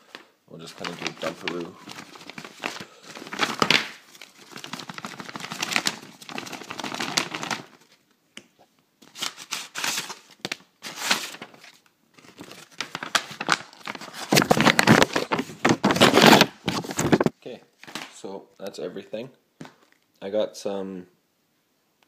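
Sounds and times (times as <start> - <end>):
packaging crinkling and rustling: 0.1 - 8.0, 9.0 - 18.2.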